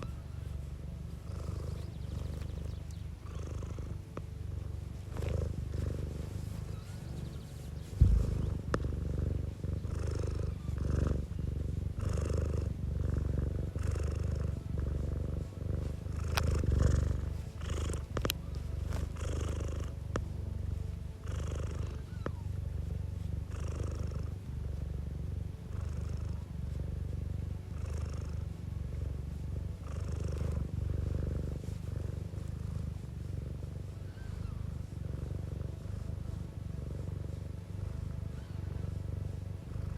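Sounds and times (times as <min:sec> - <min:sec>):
cat purring: 0:00.0 - 0:39.9
thump: 0:08.0 - 0:08.4.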